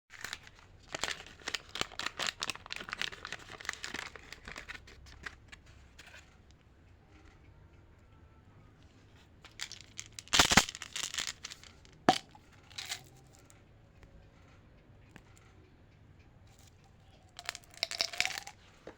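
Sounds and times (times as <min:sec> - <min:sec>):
wrapper snapping: 0:00.2 - 0:04.8, 0:09.5 - 0:13.0, 0:17.4 - 0:18.6
wrappers crinkling: 0:00.2 - 0:05.4, 0:09.5 - 0:13.1, 0:17.4 - 0:18.6.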